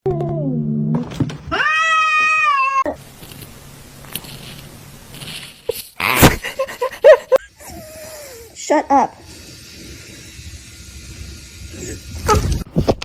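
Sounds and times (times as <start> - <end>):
cat meowing: 1.5 - 3.0.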